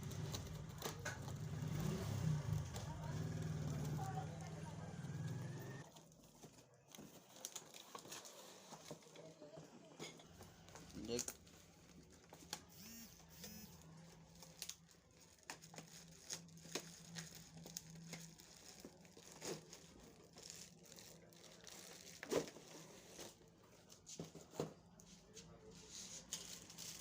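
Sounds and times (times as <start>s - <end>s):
packaging crinkling and tearing: 5.8s - 9.1s, 10.5s - 12.8s, 13.5s - 23.5s, 26.3s - 27.0s.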